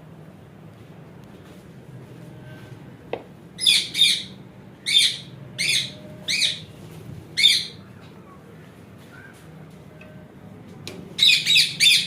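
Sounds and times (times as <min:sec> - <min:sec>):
parrot calling: 0:03.6 - 0:06.7, 0:07.4 - 0:07.8, 0:11.2 - 0:12.0.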